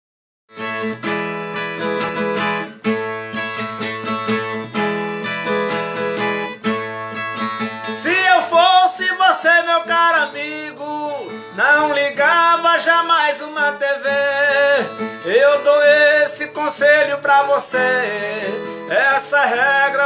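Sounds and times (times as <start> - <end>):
guitar strummed and picked: 0.5 - 20.0
person singing: 7.8 - 20.0.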